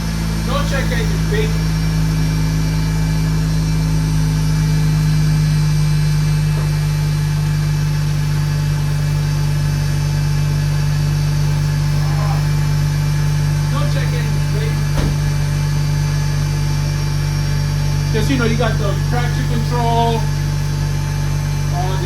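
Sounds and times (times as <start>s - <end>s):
rotary engine idling: 0.0s - 22.0s.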